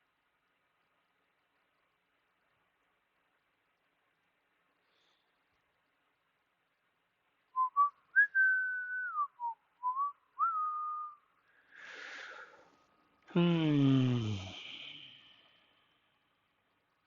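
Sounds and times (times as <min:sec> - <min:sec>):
person whistling: 0:07.6 - 0:11.2
breathy exhale: 0:11.4 - 0:12.7, 0:13.3 - 0:15.9.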